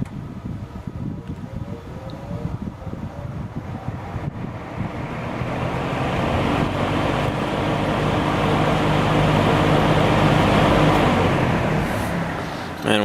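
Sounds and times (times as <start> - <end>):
fan air rushing: 0.0 - 13.0
low motor hum: 0.0 - 13.0.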